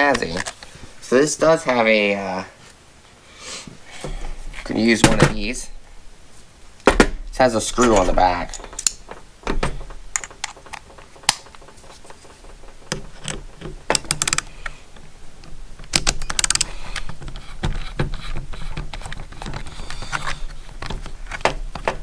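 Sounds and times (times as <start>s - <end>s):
plastic packaging rattles: 7.7s - 14.6s.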